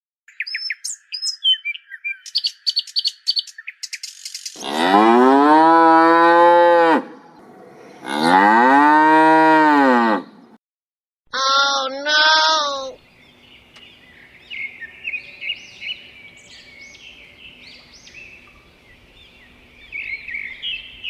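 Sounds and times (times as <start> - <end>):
birds chirping: 0.3 - 4.9, 7.0 - 8.9, 11.4 - 21.0
cow mooing: 4.6 - 7.2, 7.8 - 10.3.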